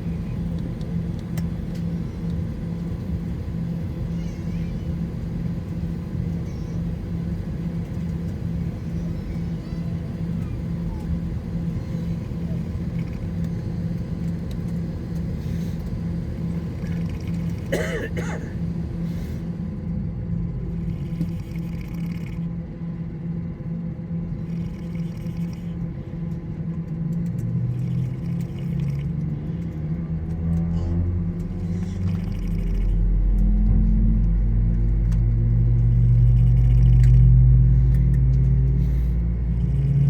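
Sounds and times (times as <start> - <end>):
aircraft cabin drone: 0.0 - 40.0
person coughing: 17.6 - 18.6.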